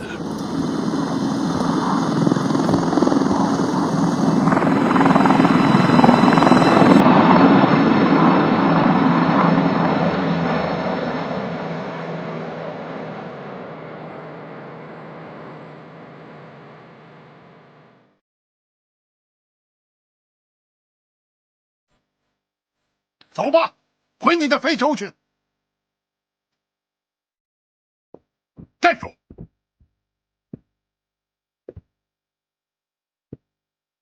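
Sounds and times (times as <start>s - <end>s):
helicopter passing over: 0.0s - 18.1s.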